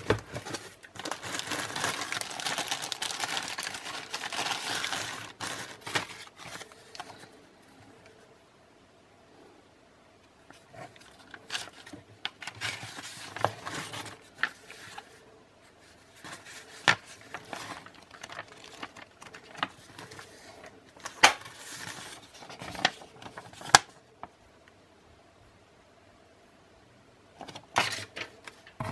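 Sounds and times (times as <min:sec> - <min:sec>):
packaging rustling: 0:00.0 - 0:07.3, 0:10.9 - 0:15.1, 0:16.2 - 0:24.0.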